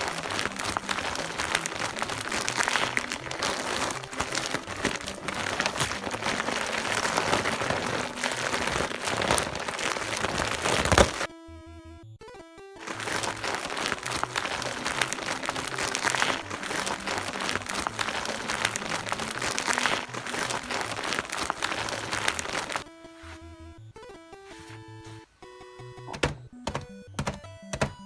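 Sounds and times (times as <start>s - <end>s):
crackling and crinkling: 0.0s - 11.3s, 12.8s - 23.6s.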